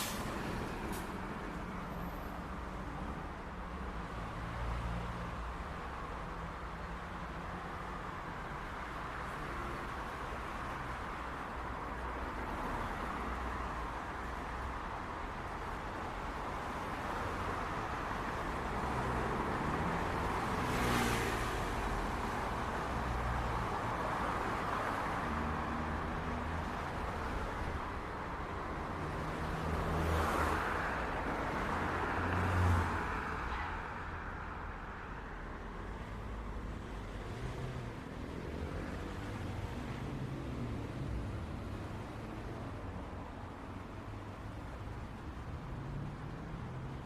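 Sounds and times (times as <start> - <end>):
hum of traffic: 0.0 - 47.0
vehicles passing close by: 0.0 - 47.0.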